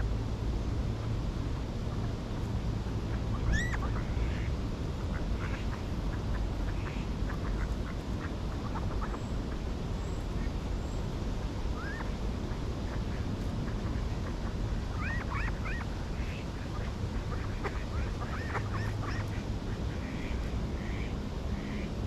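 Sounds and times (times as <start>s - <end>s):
steady low rumble: 0.0s - 22.0s
ducks quacking: 3.1s - 9.2s, 12.9s - 21.9s
high arched bird calls: 3.3s - 4.3s, 11.8s - 12.1s.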